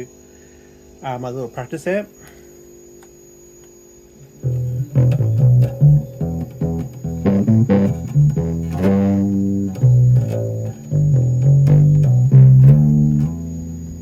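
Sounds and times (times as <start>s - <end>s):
fuzzy electric bass notes: 4.2s - 14.0s.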